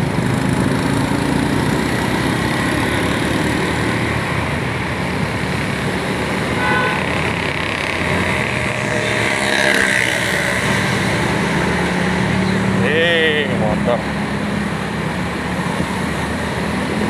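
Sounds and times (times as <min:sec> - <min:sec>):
vehicle engine driving: 0:00.0 - 0:17.0
car horn toot: 0:06.5 - 0:07.2.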